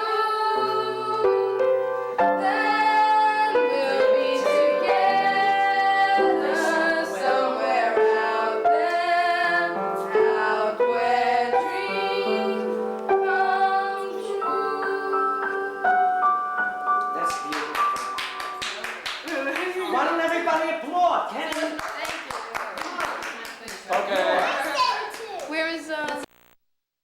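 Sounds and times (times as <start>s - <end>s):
piano accompaniment: 0.0s - 19.3s.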